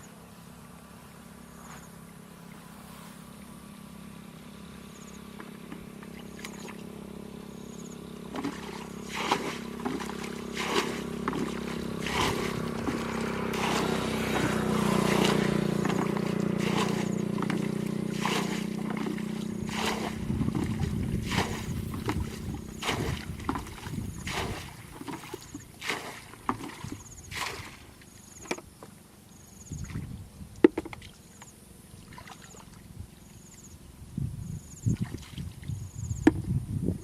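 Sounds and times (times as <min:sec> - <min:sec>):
small motor running: 0:02.6 - 0:27.3
water splashing and knocking: 0:08.3 - 0:27.8.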